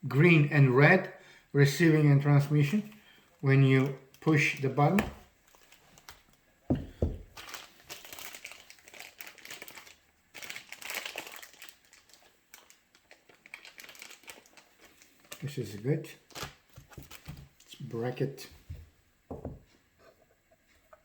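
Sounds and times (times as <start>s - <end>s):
packaging crinkling: 2.8s - 6.4s, 7.1s - 15.6s, 16.2s - 17.7s
crackling: 7.4s - 17.8s.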